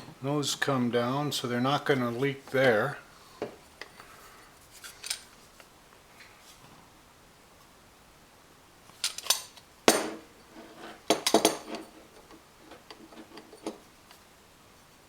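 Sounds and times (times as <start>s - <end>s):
metal parts clinking: 4.8s - 5.3s, 9.0s - 10.1s.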